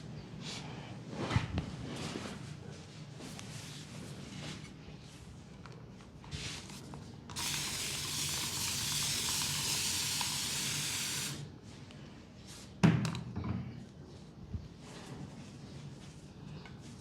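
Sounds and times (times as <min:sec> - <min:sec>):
spray hissing: 0:07.3 - 0:11.4.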